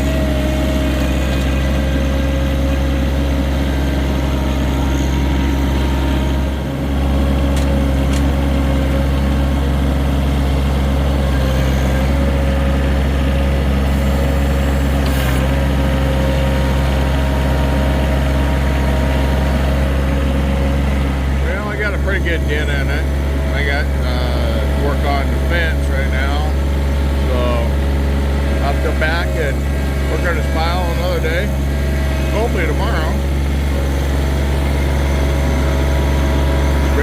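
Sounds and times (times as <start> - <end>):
diesel tractor engine running: 0.0 - 37.0.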